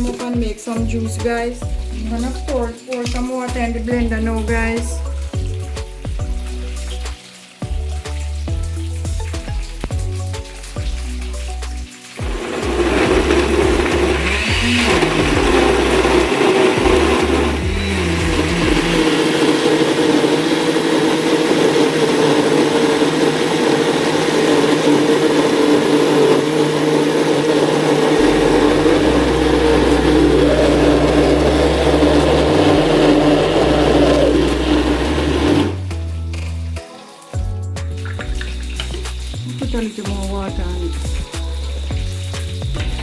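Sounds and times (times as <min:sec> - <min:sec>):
blender running: 0:12.0 - 0:35.9, 0:38.3 - 0:43.0.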